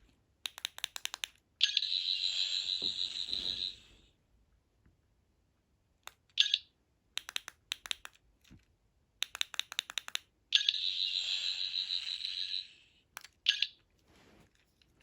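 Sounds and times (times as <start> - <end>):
toy click: 0.4 - 3.2, 6.1 - 8.2, 9.2 - 13.8
quick sharp clicks: 7.2 - 8.2, 9.2 - 10.7.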